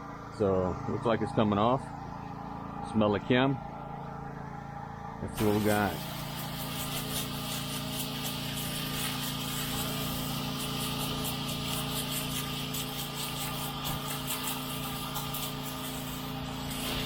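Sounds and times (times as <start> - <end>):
pressure washer engine running: 0.0 - 17.0
water spraying on wall: 5.4 - 17.0.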